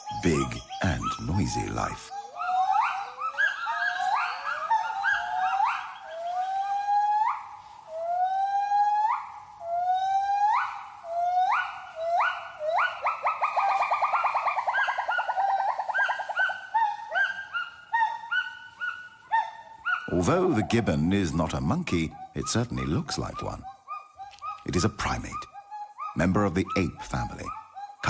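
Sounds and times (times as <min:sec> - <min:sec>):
gibbon whooping call: 0:02.0 - 0:20.7.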